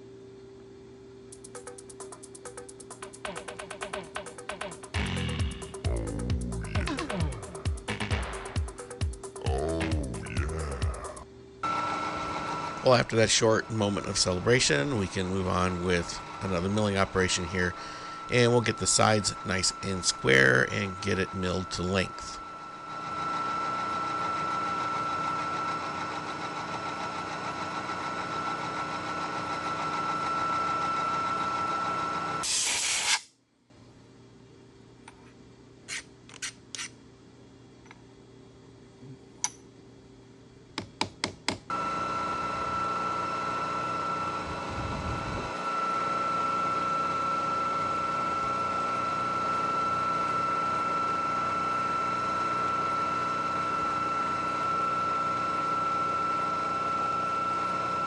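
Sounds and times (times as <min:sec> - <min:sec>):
milling machine whining: 0:04.3 - 0:32.4, 0:41.7 - 0:58.0
loud hiss: 0:32.4 - 0:33.2.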